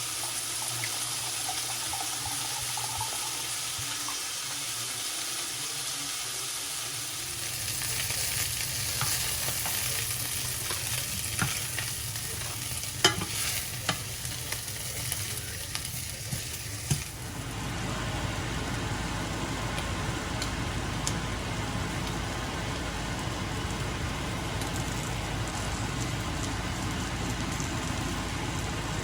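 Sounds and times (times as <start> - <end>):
chicken sizzling in a pan: 0.0 - 29.0
low steady hum: 7.4 - 29.0.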